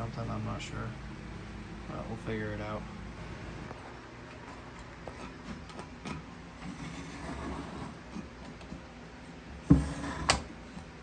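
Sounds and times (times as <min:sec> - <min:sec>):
low steady background hum: 0:00.0 - 0:11.0.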